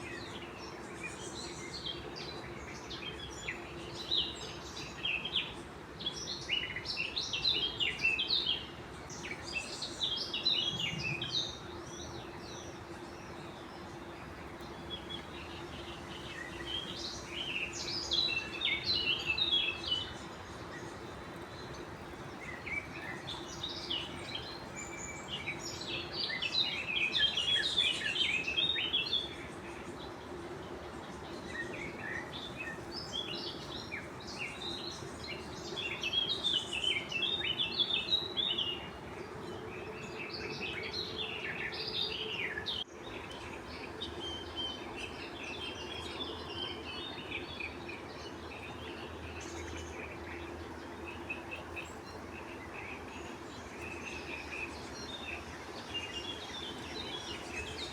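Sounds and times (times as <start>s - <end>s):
faint steady hum: 0.0s - 57.9s
songbirds chirping and twittering: 0.0s - 57.9s.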